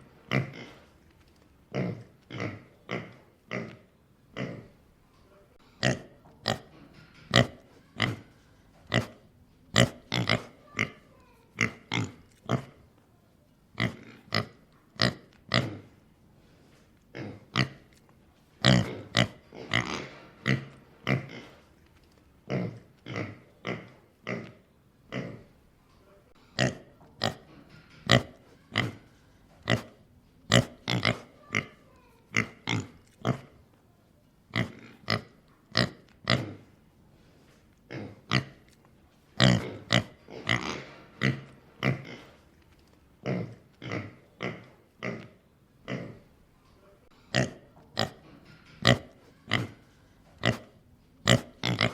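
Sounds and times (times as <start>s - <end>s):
pig grunting: 1.7s - 4.8s, 8.9s - 12.8s, 17.1s - 17.8s, 18.6s - 21.7s, 29.6s - 33.6s, 34.5s - 36.7s, 39.4s - 42.4s, 43.2s - 46.3s, 50.4s - 51.9s.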